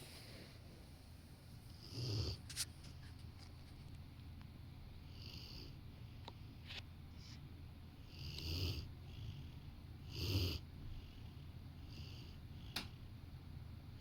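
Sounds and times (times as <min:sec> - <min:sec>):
dog snoring: 0:01.7 - 0:02.5, 0:05.1 - 0:05.8, 0:08.0 - 0:12.8.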